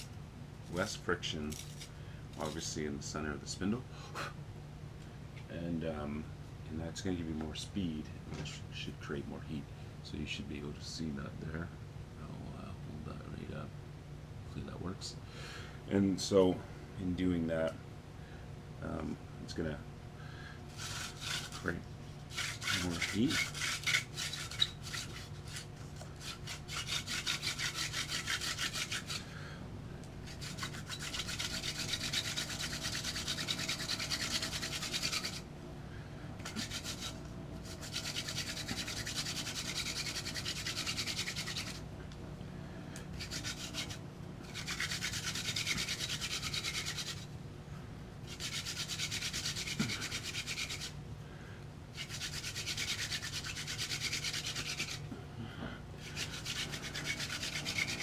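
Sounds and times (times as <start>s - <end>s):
hand drill rubbing on wood: 20.7s - 29.3s, 30.2s - 35.5s, 36.4s - 41.8s, 43.2s - 47.3s, 48.2s - 51.0s, 52.0s - 55.1s, 56.0s - 58.0s.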